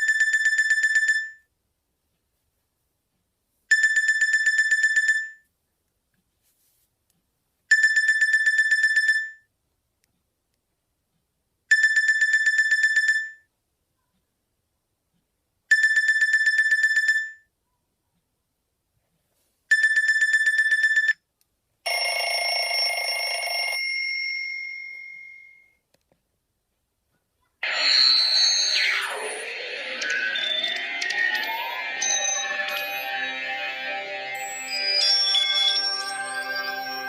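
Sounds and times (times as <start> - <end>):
trilling electronic phone ring: 21.9 - 25.8, 27.6 - 37.0
noisy chime-like tone: 27.6 - 37.0.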